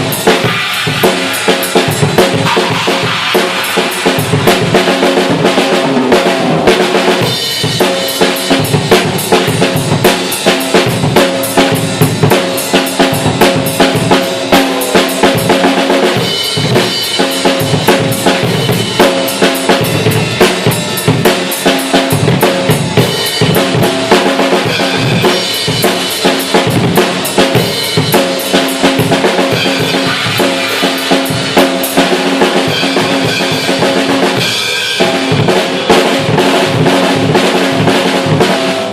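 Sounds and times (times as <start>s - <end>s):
snare drum hits: 0.0s - 4.8s
fast double bass drum strokes: 0.0s - 38.9s.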